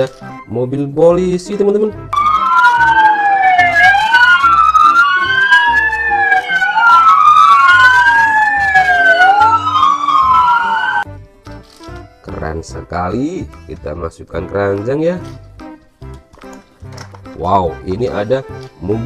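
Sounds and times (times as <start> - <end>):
police siren wailing: 2.2 - 11.1.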